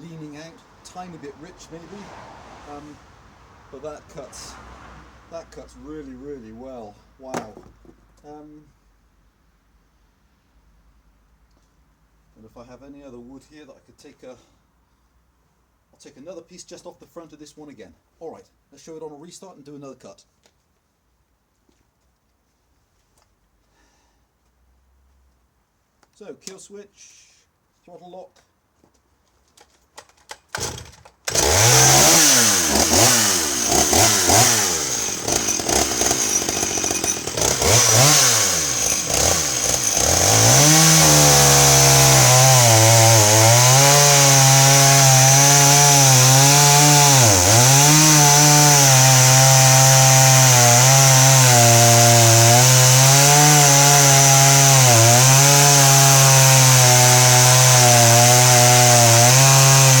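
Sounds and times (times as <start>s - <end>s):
chain rasping through wood: 30.1s - 60.0s
chainsaw revving: 30.6s - 60.0s.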